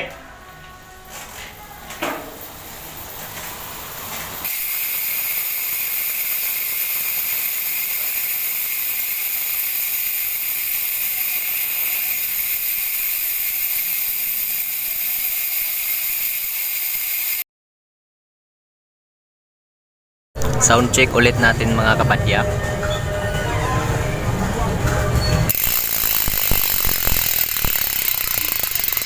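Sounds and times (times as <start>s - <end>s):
bicycle freehub buzzing: 2.4s - 17.4s, 25.5s - 29.0s.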